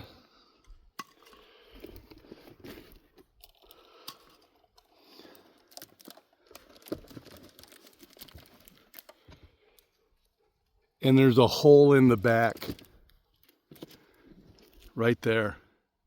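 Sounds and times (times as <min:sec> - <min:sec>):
aluminium cans being handled: 0:00.6 - 0:09.9.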